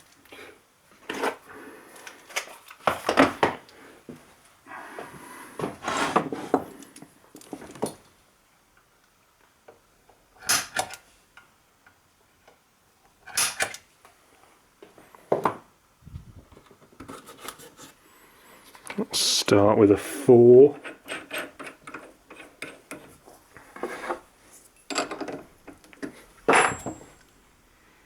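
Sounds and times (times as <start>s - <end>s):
metal tools clinking and rummaging: 26.4s - 27.3s.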